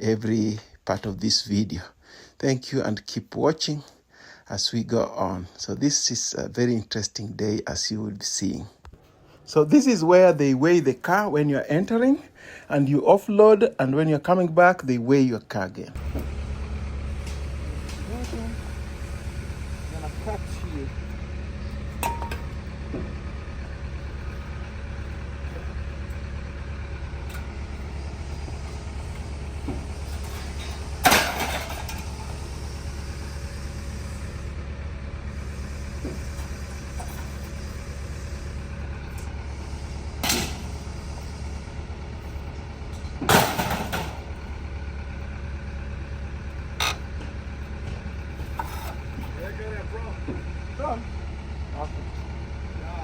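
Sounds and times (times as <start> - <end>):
vehicle engine idling: 15.9 - 53.0.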